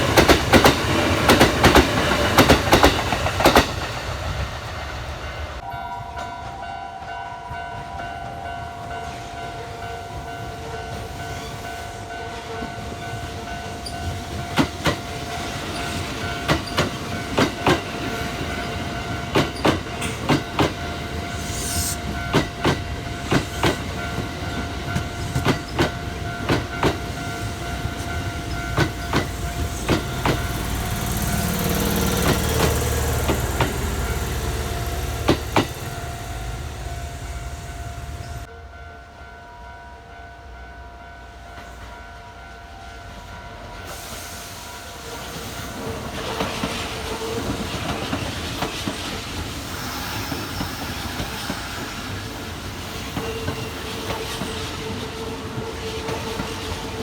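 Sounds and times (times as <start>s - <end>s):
train wheels clacking over rail joints: 0.0s - 5.6s, 13.8s - 38.5s.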